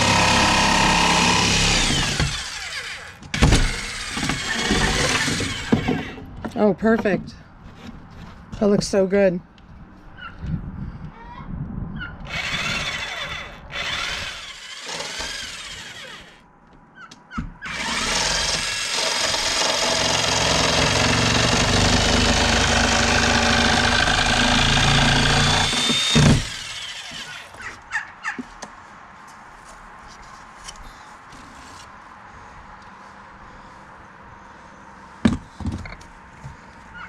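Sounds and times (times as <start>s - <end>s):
handheld power tool running: 0.0s - 5.9s, 12.3s - 16.4s, 17.7s - 27.5s.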